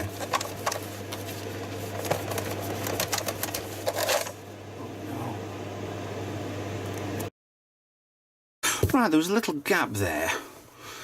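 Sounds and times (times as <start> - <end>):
steady low hum: 0.0 - 7.3.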